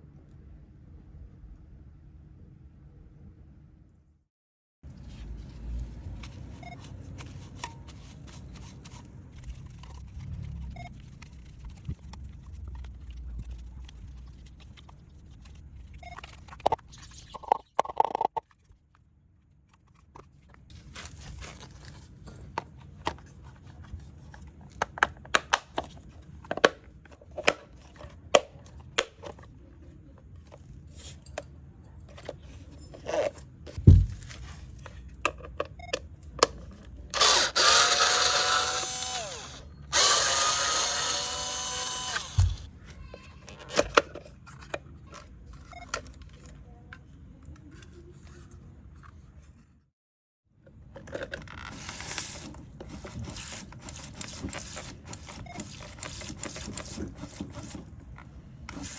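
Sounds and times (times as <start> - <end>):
electric screwdriver motor whining: 37.2 - 42.7.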